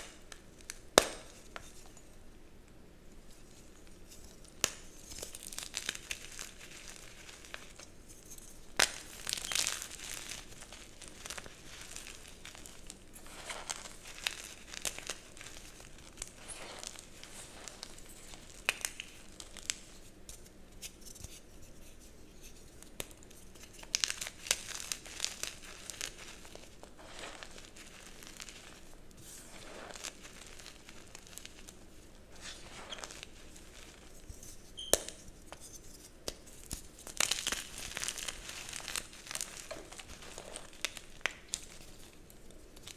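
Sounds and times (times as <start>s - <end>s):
chalk crunching and crackling: 3.6s - 42.9s
chalk snapping: 22.9s - 28.8s, 29.4s - 34.0s.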